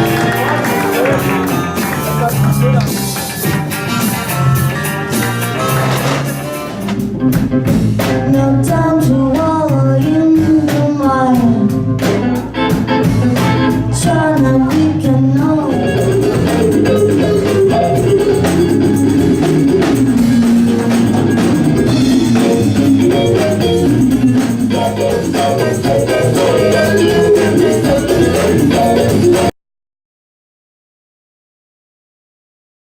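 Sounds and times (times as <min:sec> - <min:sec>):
song with beat and bass: 0:00.0 - 0:08.8, 0:15.5 - 0:29.5.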